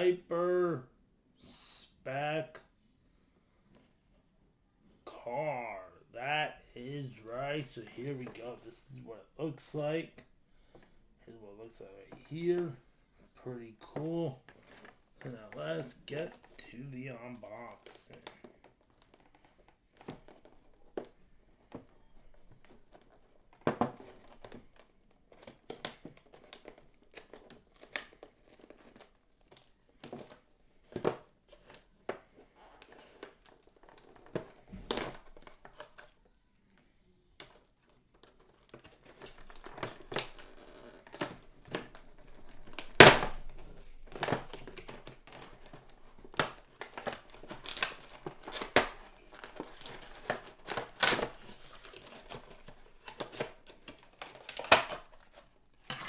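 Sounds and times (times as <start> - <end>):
packaging crinkling and tearing: 38.2 - 56.0.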